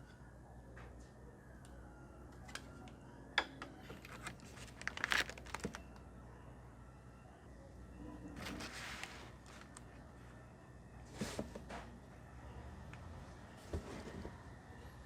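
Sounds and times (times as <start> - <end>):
packaging crinkling: 3.9 - 6.0.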